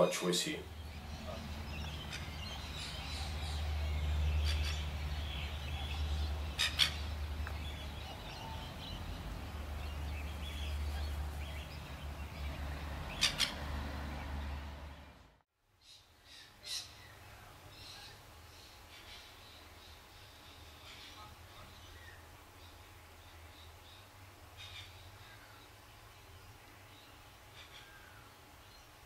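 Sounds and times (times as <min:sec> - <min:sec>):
lapwings giving harsh calls: 0:01.0 - 0:05.2, 0:05.9 - 0:07.4.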